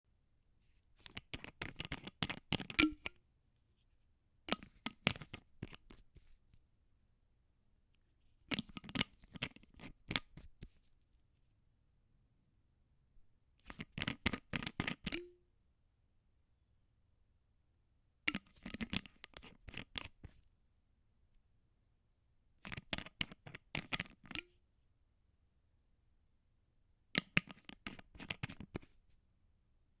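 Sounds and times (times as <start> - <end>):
screw cap clicking on bottle: 1.0 - 3.2, 4.5 - 6.0, 18.3 - 20.1, 22.6 - 24.5, 27.2 - 28.9.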